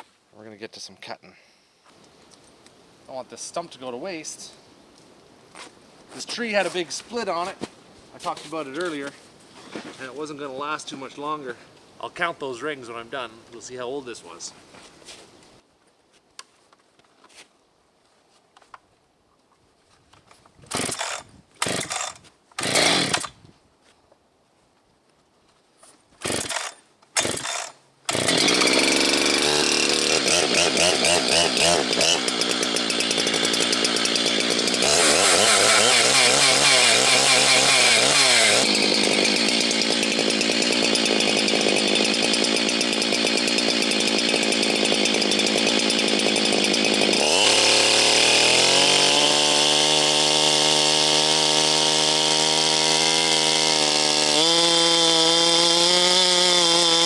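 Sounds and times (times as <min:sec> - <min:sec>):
chainsaw sputtering and running: 0:20.7 - 0:23.4, 0:26.2 - 0:57.0.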